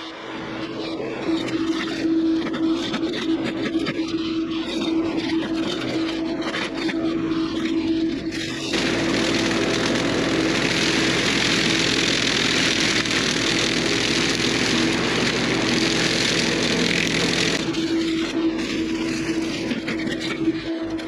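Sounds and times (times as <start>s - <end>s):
mini excavator running: 8.6s - 21.0s
loud broad rushing noise: 8.7s - 19.8s.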